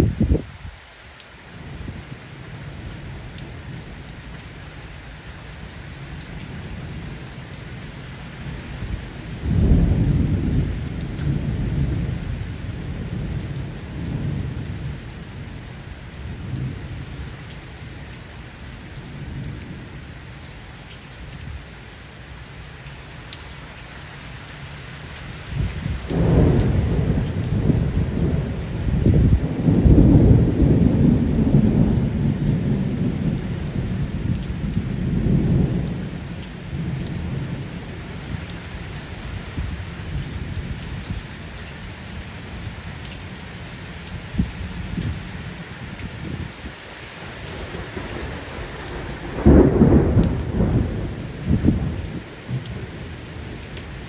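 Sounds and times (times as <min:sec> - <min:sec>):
thunder rumbling: 0:00.0 - 0:00.8, 0:06.3 - 0:18.0, 0:25.5 - 0:41.2, 0:44.0 - 0:54.0
steady rain falling: 0:00.0 - 0:54.0.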